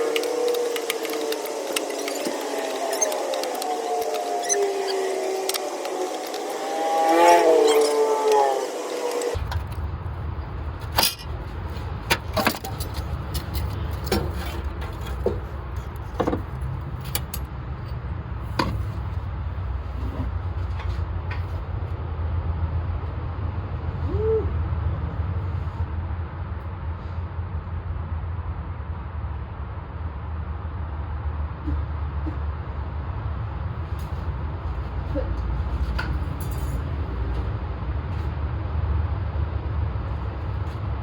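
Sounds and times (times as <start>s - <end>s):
steady low rumble: 9.4s - 41.0s
tools clicking and knocking on metal: 12.1s - 17.6s.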